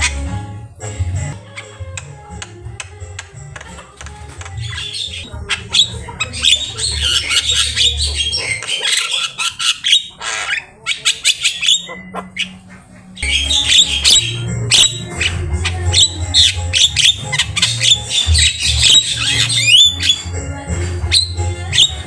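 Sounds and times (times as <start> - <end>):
background music with bass: 0.0 - 8.4, 13.2 - 22.0
myna squawking and chattering: 1.3 - 22.0.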